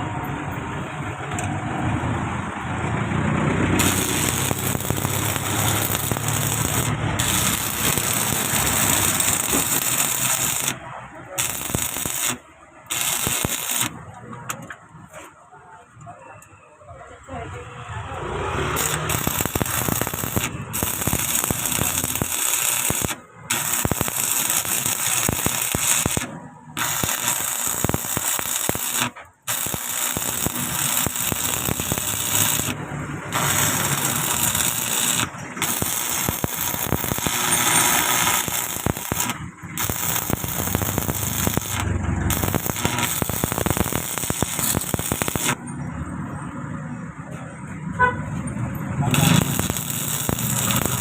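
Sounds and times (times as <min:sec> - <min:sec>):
arc welding crackle: 0:03.6 - 0:14.0, 0:18.6 - 0:45.6, 0:49.0 - 0:51.0.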